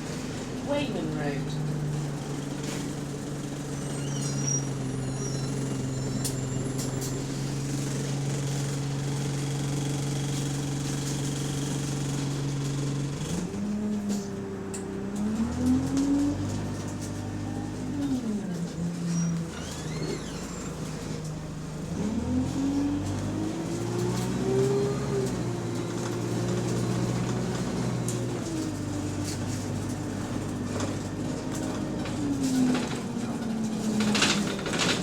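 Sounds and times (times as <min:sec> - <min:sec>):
diesel bus engine running: 0:00.0 - 0:35.0.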